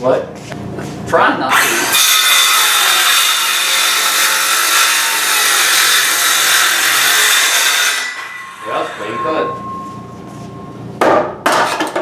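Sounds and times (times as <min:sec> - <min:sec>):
power saw whining: 0:01.5 - 0:10.2.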